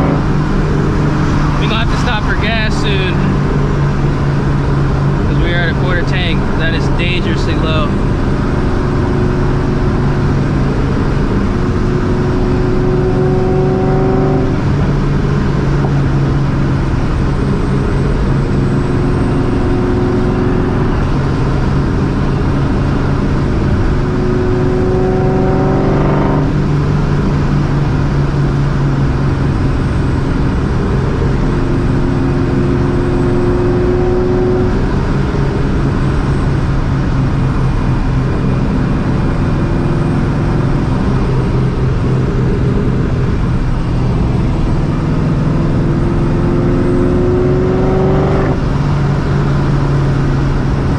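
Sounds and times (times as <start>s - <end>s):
car engine accelerating through gears: 0.0s - 50.9s.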